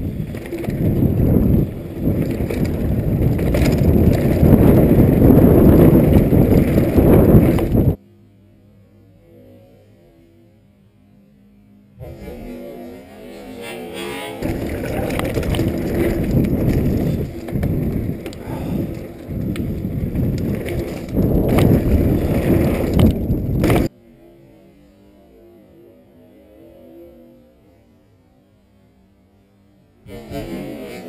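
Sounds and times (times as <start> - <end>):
bike chain and frame rattling: 0.0 - 8.0, 14.4 - 23.9
tyres rolling over dirt: 0.0 - 8.0, 14.3 - 23.9
wind noise on microphone: 0.0 - 8.0, 14.4 - 23.9
faint hum: 0.0 - 31.0.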